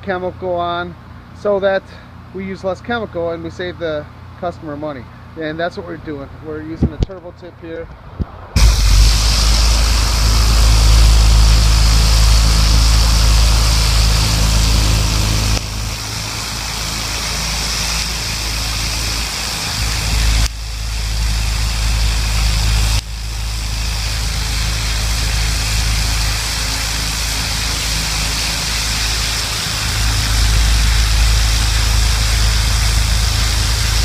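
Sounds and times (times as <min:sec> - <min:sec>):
pressure washer engine humming: 0:08.6 - 0:34.0
water spray hissing: 0:08.6 - 0:34.0.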